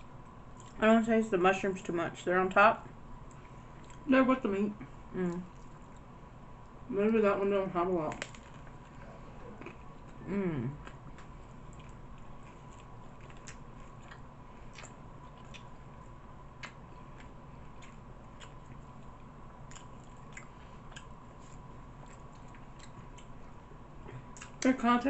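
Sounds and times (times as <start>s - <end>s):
low steady hum: 0.0s - 25.0s
person chewing: 0.6s - 0.8s, 3.2s - 4.1s, 8.3s - 24.6s
bread crunching: 8.1s - 9.0s.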